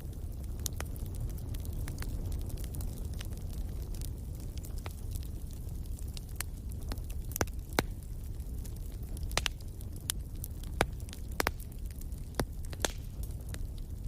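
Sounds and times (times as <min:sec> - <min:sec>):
firewood crackling and popping: 0:00.0 - 0:14.0
low rumble of fire: 0:00.0 - 0:14.0.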